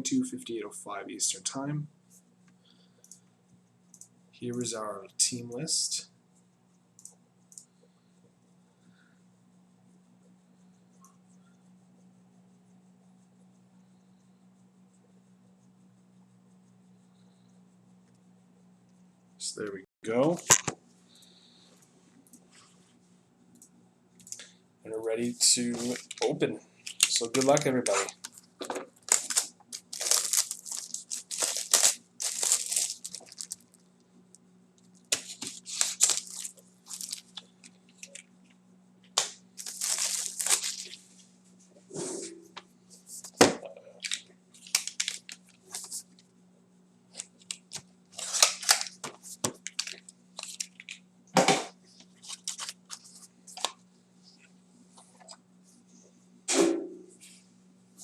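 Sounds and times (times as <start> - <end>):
faint steady hum: 0.0 - 58.0
plastic wrap tearing and crinkling: 25.4 - 33.8, 35.1 - 38.3, 39.2 - 41.0, 44.0 - 46.0, 47.2 - 51.0, 52.2 - 53.6.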